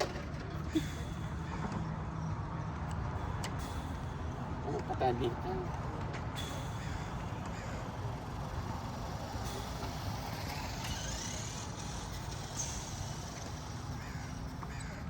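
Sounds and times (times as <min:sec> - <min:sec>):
toy truck electric motor whirring: 0:06.4 - 0:15.0.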